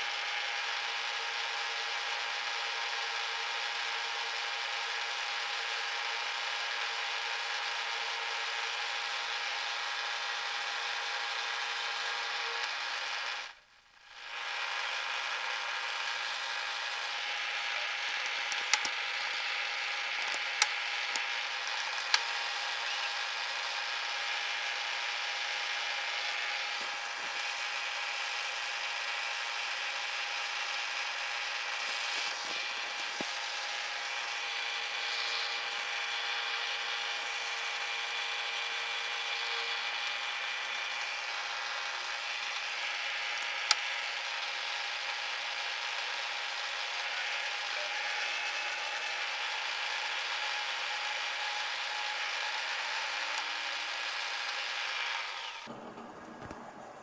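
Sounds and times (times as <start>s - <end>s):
milling machine cutting metal: 7.4s - 57.0s.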